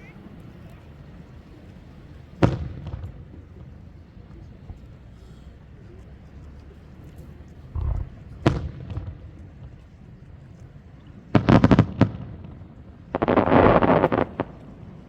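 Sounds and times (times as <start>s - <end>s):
crackling bangs: 2.3s - 3.8s, 7.7s - 9.7s, 11.3s - 15.0s
fireworks bursting: 2.3s - 3.8s, 11.3s - 15.0s.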